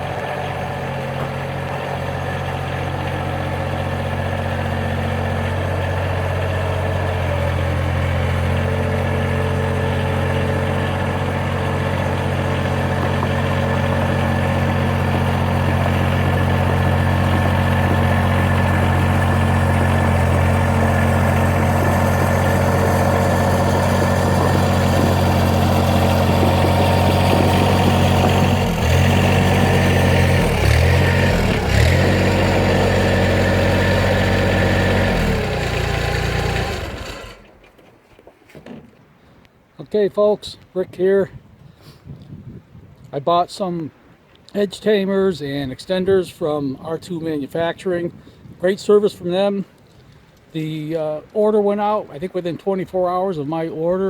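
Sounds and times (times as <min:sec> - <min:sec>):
diesel tractor engine running: 0:00.0 - 0:37.8.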